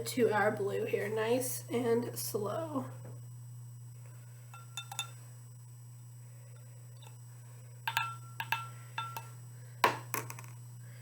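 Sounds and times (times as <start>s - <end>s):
steady low hum: 0.0s - 11.0s
glassware clinking: 4.6s - 5.2s, 7.9s - 9.3s.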